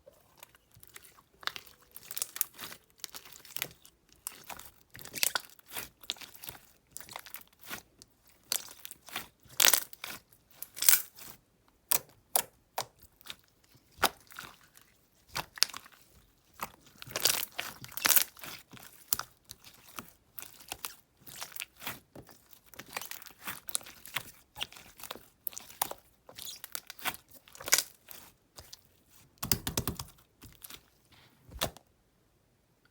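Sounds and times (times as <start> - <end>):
slime squelching: 0.0 - 31.8
sticky slime popping and crackling: 16.6 - 28.8, 29.4 - 30.8.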